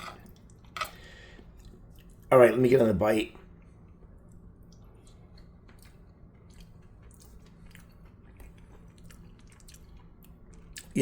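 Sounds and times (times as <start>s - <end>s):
chewing soft food: 3.6s - 11.0s.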